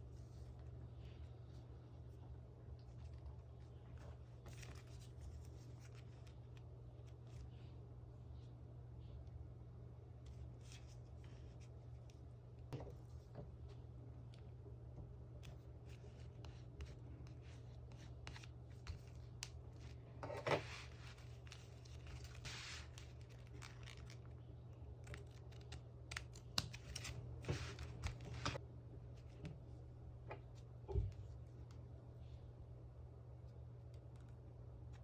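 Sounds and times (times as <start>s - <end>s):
steady low hum: 0.0s - 35.0s
paper rustling and tearing: 20.6s - 24.3s.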